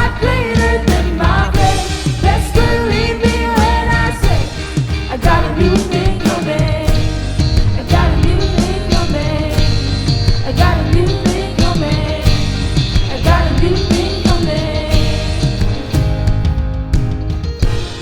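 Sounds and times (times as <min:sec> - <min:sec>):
person singing: 0:00.0 - 0:15.8
rock band playing: 0:00.0 - 0:18.0.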